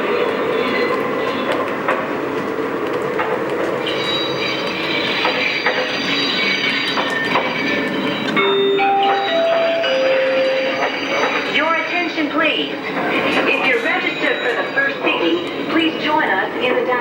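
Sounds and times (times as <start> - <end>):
wheels clicking over rail joints: 0.0 - 16.9
model train running on track: 0.0 - 17.0
high wheel squeal: 3.7 - 16.2.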